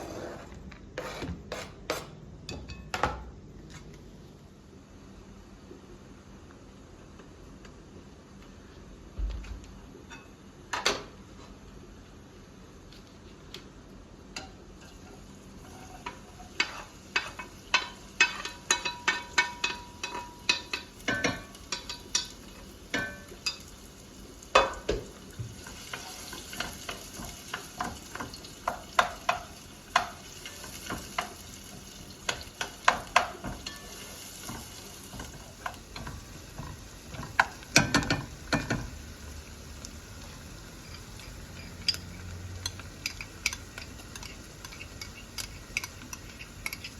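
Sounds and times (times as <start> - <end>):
food sizzling in a pan: 14.4 - 46.9.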